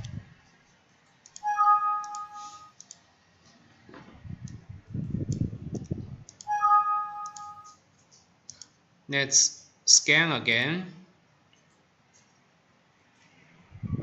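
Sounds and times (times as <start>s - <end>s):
mouse clicks: 1.2s - 3.0s, 7.2s - 8.8s
computer alert chime: 1.4s - 2.8s, 6.5s - 7.8s.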